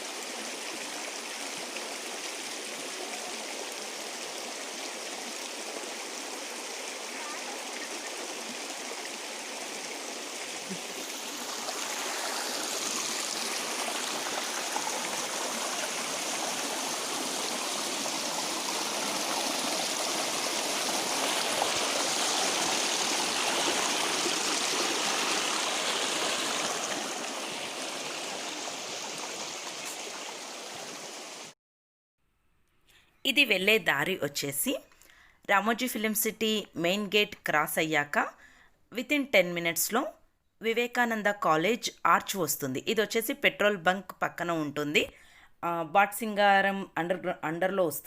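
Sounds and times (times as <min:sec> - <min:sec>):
water rushing over rocks: 0:00.0 - 0:31.5.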